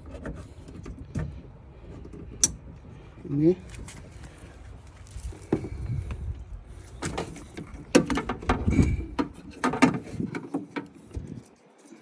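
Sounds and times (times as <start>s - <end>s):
hard parts clicking and rattling: 6.8s - 12.0s.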